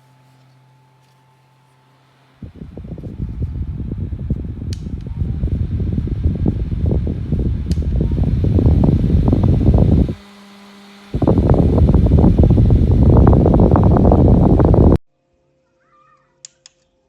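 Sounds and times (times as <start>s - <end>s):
desk fan airflow rushing: 0.0s - 15.0s
faint fan hum: 0.0s - 17.0s.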